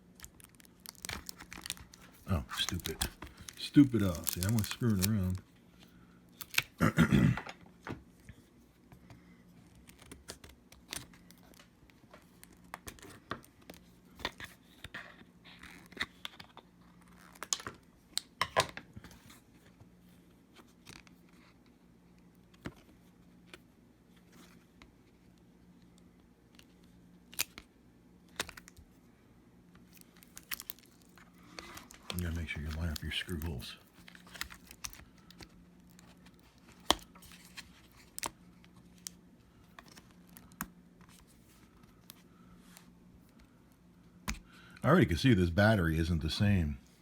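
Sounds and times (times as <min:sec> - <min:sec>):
faint low hum: 0:00.0 - 0:47.0
hands handling plastic battery parts: 0:00.2 - 0:05.4, 0:29.9 - 0:42.2.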